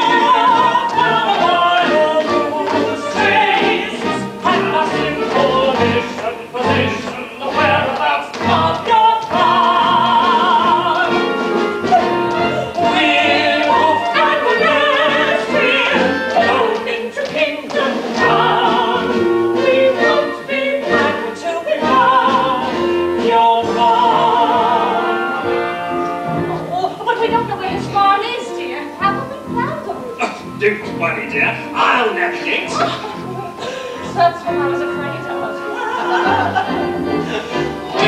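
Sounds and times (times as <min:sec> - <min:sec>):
singing with wide vibrato: 0:00.0 - 0:25.9
instrumental accompaniment: 0:00.0 - 0:38.0.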